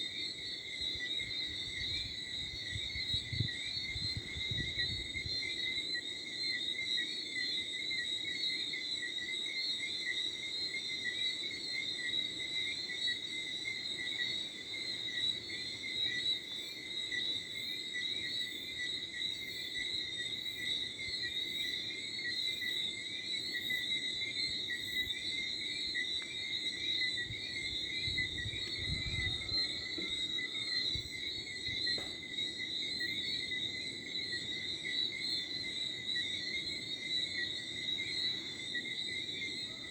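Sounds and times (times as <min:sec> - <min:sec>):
crickets and frogs trilling: 0:00.0 - 0:39.9
low wind rumble: 0:01.7 - 0:05.4, 0:27.3 - 0:29.6.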